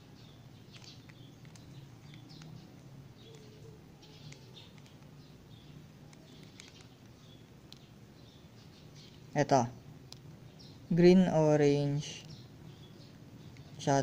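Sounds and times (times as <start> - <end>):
low steady hum: 0.0 - 14.0
plastic puzzle cube clicking: 0.7 - 2.6, 3.2 - 5.1, 6.1 - 7.9.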